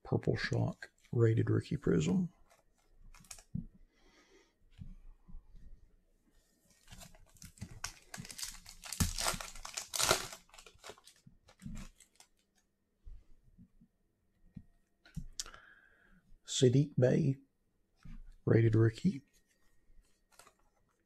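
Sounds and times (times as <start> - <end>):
cards clicking and rustling: 2.5 - 3.5, 6.8 - 12.6, 20.2 - 21.0
wrapper tearing and crinkling: 2.5 - 3.5, 6.9 - 12.5.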